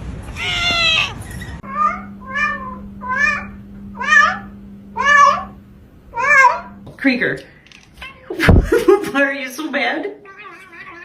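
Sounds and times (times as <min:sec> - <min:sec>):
cat meowing: 0:00.3 - 0:05.6, 0:06.2 - 0:06.7, 0:10.2 - 0:11.0.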